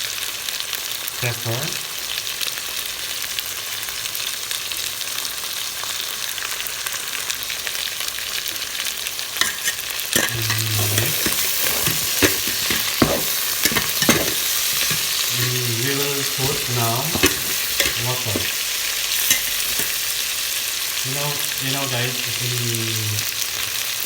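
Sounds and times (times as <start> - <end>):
chicken sizzling in a pan: 0.0 - 24.0
utensil scraping a pan: 9.4 - 20.2.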